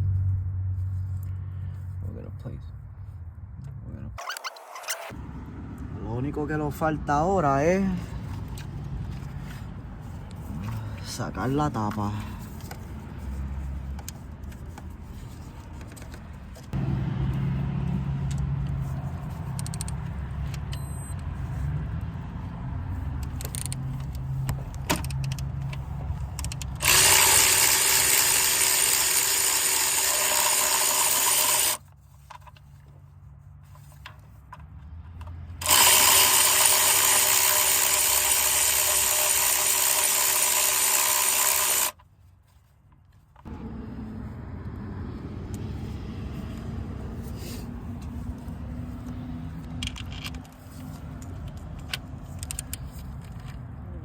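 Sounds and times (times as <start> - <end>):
power tool motor running: 26.7 - 31.8, 35.6 - 42.0.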